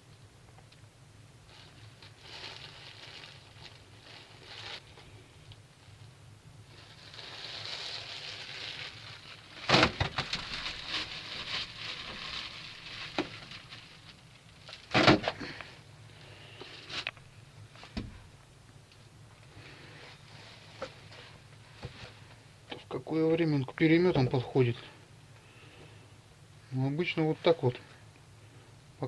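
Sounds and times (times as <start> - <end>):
faint low hum: 0.0 - 29.0
rustling and handling noises: 0.1 - 26.0.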